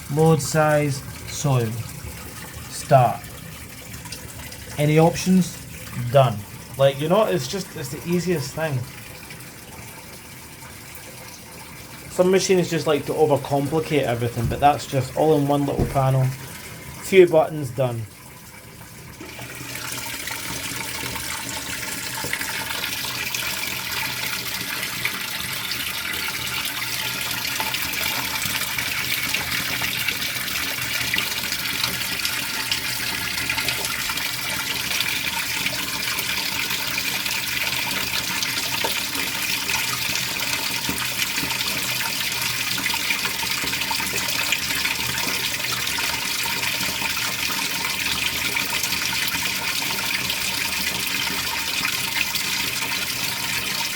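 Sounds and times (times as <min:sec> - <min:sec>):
water pouring into washing machine: 0:00.0 - 0:53.9.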